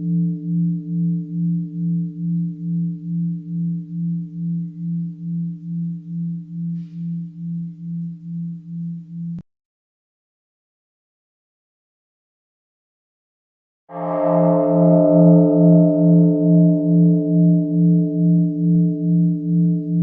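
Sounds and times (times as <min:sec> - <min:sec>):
bell ringing with pulsing tone: 0:00.0 - 0:09.4, 0:13.9 - 0:20.0.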